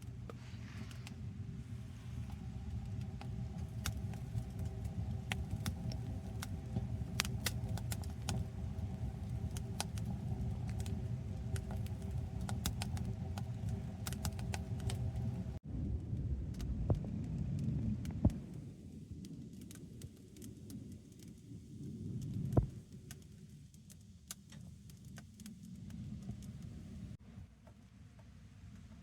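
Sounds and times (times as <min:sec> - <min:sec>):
stove low rumble: 0:00.0 - 0:20.7, 0:24.2 - 0:27.2
wood fire crackling and popping: 0:00.0 - 0:27.1.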